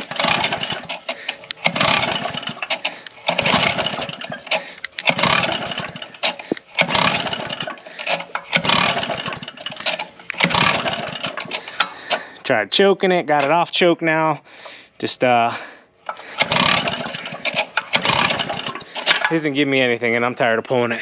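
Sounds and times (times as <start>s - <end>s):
small engine recoil pull-start: 0.0s - 12.4s, 16.1s - 19.5s.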